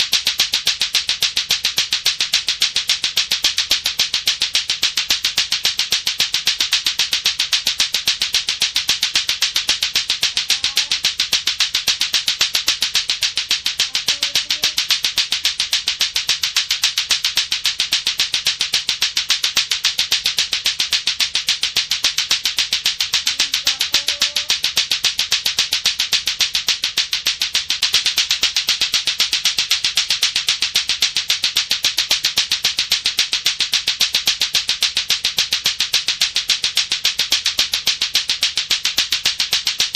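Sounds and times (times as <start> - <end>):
plastic clacker balls knocking: 0.0 - 39.9.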